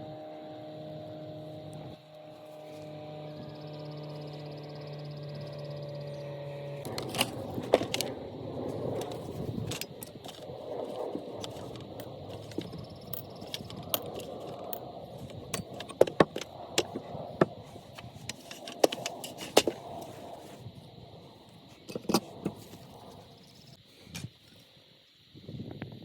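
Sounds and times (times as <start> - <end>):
metal tools clicking and scraping: 6.9 - 8.1, 8.8 - 20.4, 21.7 - 22.9.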